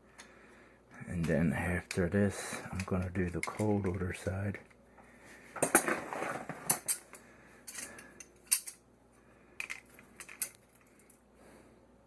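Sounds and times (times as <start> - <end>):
scraping rustle: 5.8 - 6.9.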